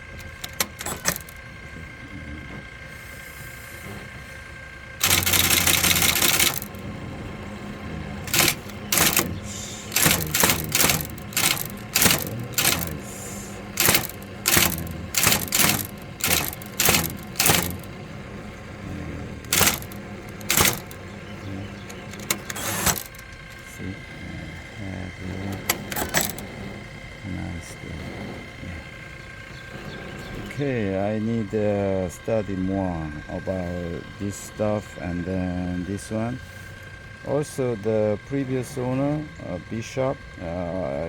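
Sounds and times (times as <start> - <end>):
loud machine noise burst: 0.0 - 28.3
typewriter key strikes: 0.1 - 1.4, 5.0 - 6.8, 8.3 - 17.9, 19.5 - 21.0, 21.8 - 23.2, 25.5 - 26.4.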